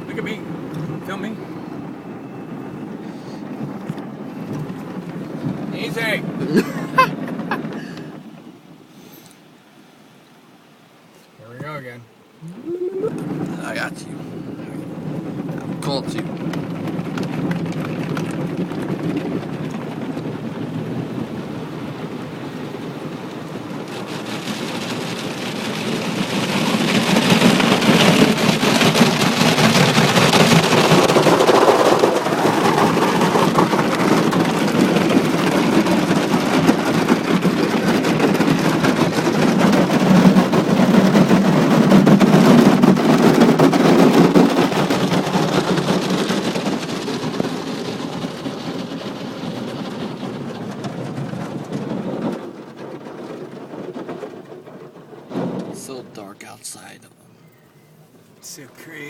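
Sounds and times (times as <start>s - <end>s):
car wash water spraying: 0.0s - 57.0s.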